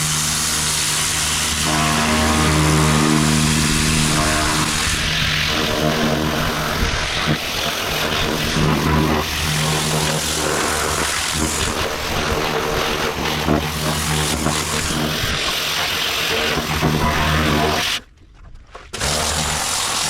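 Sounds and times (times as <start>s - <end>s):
pressure washer pump hum: 0.0s - 18.0s, 19.0s - 20.0s.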